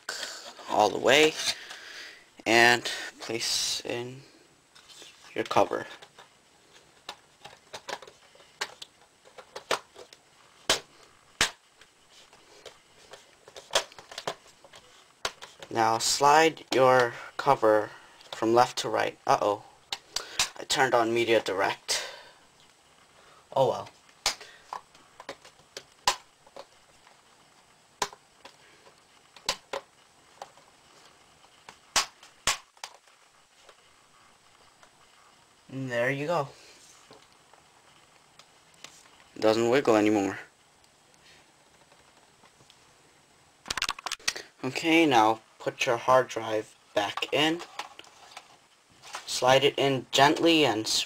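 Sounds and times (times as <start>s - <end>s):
plastic clicks and snaps: 43.6s - 44.4s.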